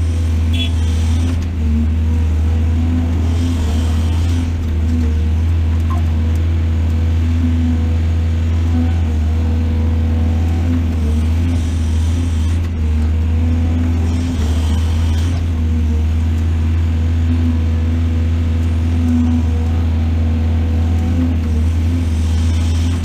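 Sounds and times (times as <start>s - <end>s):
diesel engine running under load: 0.0s - 23.0s.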